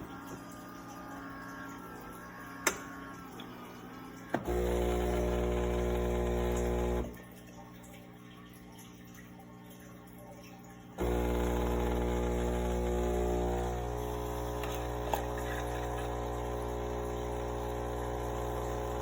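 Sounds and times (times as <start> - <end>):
espresso machine pump humming: 0.0 - 7.2, 11.0 - 19.0.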